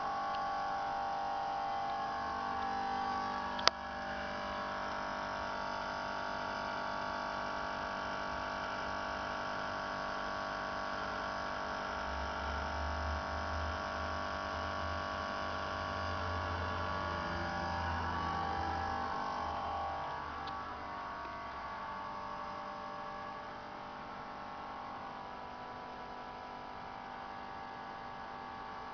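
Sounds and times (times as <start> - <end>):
motor humming: 0.0 - 8.8, 15.4 - 28.9
low buzz: 0.0 - 28.9.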